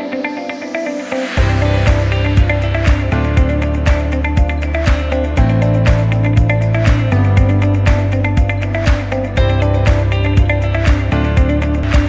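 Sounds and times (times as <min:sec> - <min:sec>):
electronic music with beat: 0:00.0 - 0:12.0.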